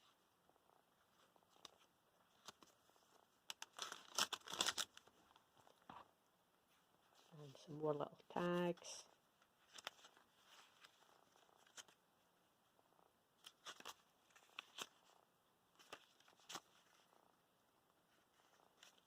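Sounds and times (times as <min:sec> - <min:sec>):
paper rustling: 0:03.5 - 0:06.0, 0:09.6 - 0:12.0, 0:13.4 - 0:15.1, 0:15.8 - 0:17.1.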